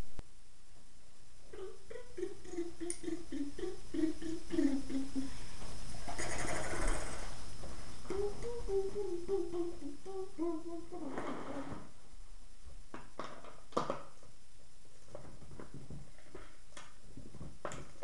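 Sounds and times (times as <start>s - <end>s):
person humming: 1.4s - 5.6s, 8.0s - 11.9s.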